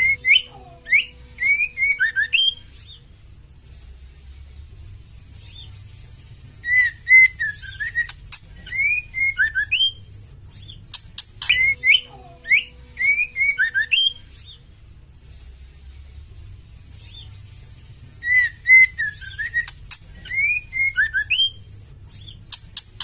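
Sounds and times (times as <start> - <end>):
bird chirping and whistling: 0.0 - 3.1, 5.4 - 14.7, 17.0 - 23.0
sharp ticking clicks: 6.5 - 14.0, 18.2 - 23.0.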